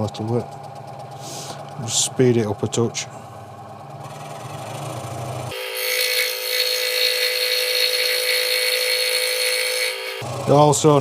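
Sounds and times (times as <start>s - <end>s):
scroll saw motor hum: 0.0s - 10.9s
saw blade cutting wood: 4.0s - 10.3s.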